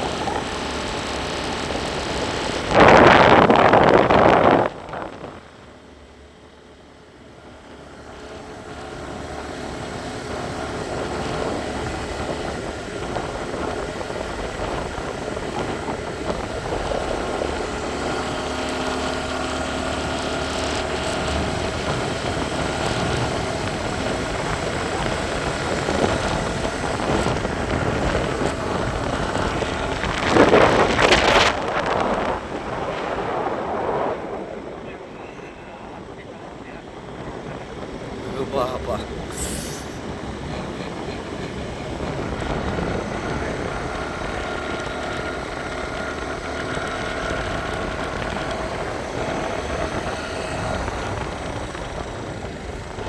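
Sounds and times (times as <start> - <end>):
wind on microphone: 0.0 - 5.7, 20.7 - 38.3, 39.1 - 53.0
vehicle engine running: 0.0 - 33.7, 34.4 - 53.0.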